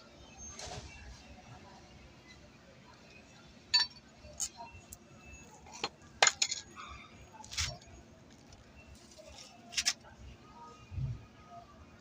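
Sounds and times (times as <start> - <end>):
metallic clinks of tools and parts: 3.7 - 4.7, 5.6 - 8.5.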